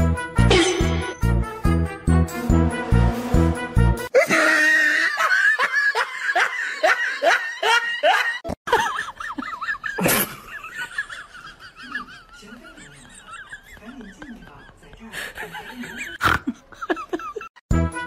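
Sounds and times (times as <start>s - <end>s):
person laughing: 0.5s - 1.2s, 4.1s - 17.5s.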